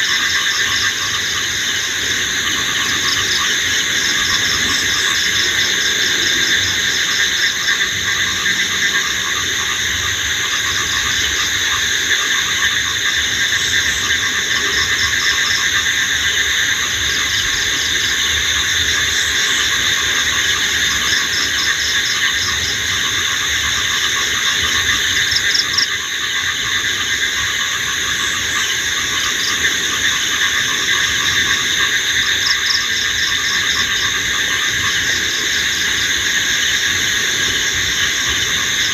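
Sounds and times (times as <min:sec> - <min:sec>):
crickets and insects trilling: 0:00.0 - 0:38.9.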